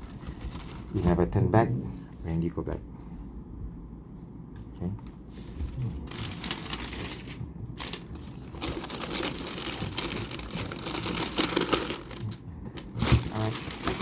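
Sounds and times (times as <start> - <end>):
packaging wrapping crinkling: 0.0 - 1.0, 6.0 - 14.0.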